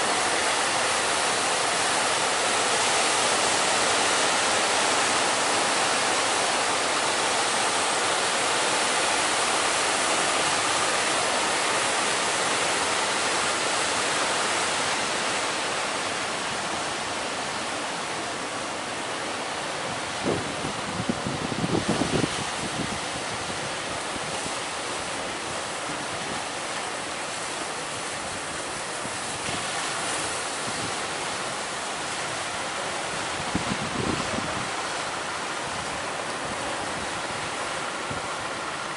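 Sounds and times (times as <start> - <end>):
heavy ocean surf: 0.0 - 38.9
wind buffeting microphone: 19.9 - 26.5, 33.1 - 38.5.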